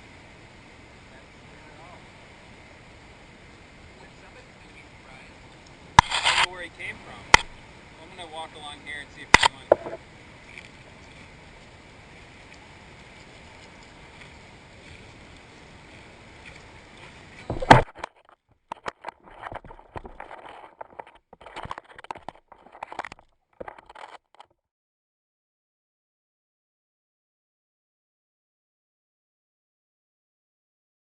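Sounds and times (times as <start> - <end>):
steady outdoor background noise: 0.0 - 24.5
rustles and knocks: 9.6 - 11.2, 15.9 - 24.5.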